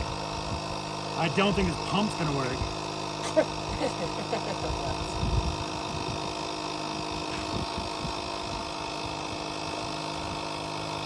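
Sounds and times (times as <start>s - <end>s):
tire pump humming: 0.0s - 11.0s.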